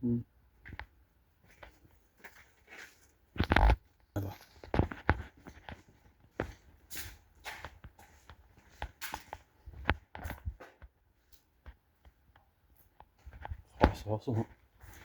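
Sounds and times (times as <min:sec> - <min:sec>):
footsteps on hard floor: 0:04.7 - 0:10.8.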